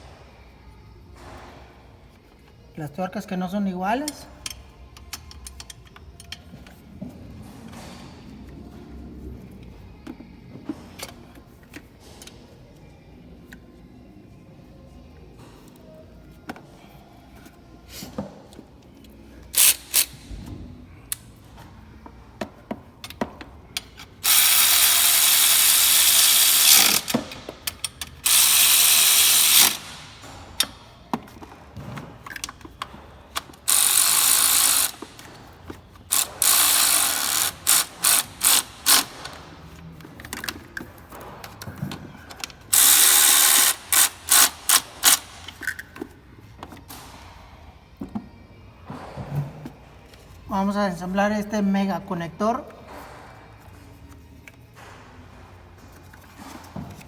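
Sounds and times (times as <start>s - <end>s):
ratchet wrench ratcheting: 4.1s - 6.8s, 19.5s - 20.3s, 23.8s - 30.8s, 32.2s - 39.5s, 42.4s - 46.1s
ratchet single clicks: 24.2s - 30.0s, 42.8s - 45.8s.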